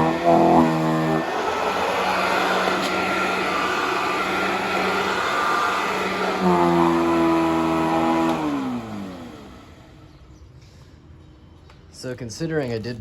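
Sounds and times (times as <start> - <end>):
upright vacuum cleaner running: 0.0 - 10.1.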